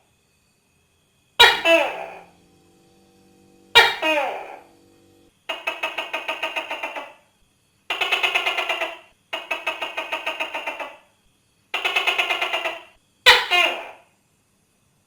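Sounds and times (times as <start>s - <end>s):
gecko calling in rattling pulses: 1.4s - 2.3s, 5.5s - 7.2s, 7.9s - 11.1s, 11.8s - 14.0s.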